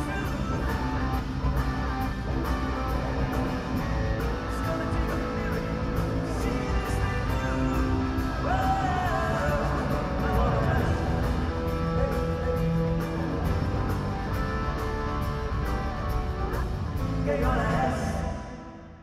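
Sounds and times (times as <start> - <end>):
live rock band playing: 0.0 - 18.3.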